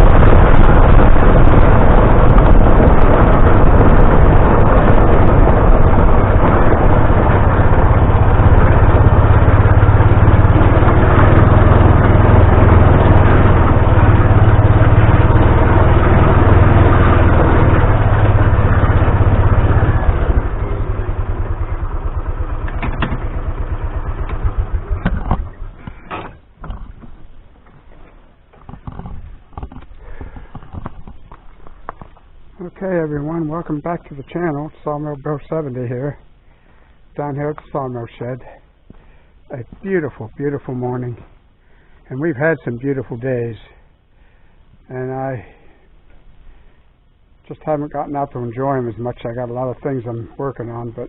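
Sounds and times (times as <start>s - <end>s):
vehicle engine running: 0.0s - 51.0s
knocks and clatter: 22.6s - 23.4s, 24.1s - 32.3s.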